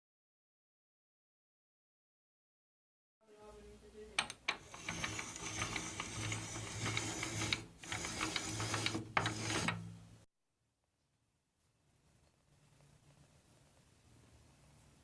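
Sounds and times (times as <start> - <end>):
rapid mechanical clicking and rattling: 4.5 - 9.8
small motor tool humming: 4.6 - 9.7.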